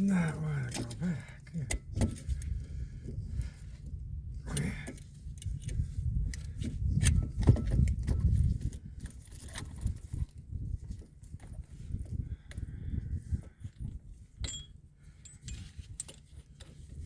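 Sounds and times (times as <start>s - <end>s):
metallic clicks and clinks: 14.4s - 16.2s.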